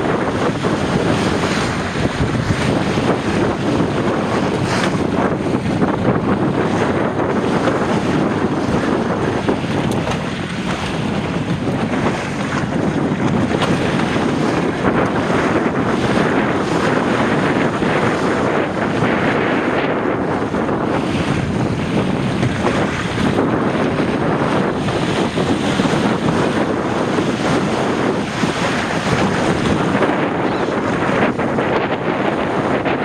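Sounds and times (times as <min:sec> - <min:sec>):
water washing along hull: 0:00.0 - 0:33.0
wind buffeting microphone: 0:00.0 - 0:33.0.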